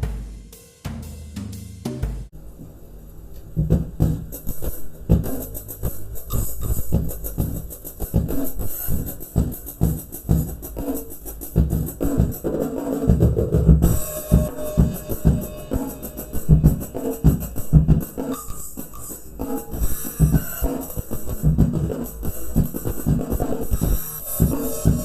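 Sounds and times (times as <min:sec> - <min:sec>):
box bass drum thuds: 0:00.0 - 0:02.3
cymbals: 0:13.8 - 0:25.0.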